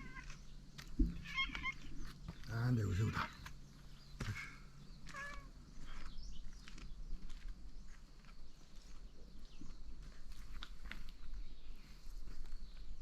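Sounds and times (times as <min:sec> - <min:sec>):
cats meowing: 0:01.2 - 0:01.9, 0:05.1 - 0:05.5.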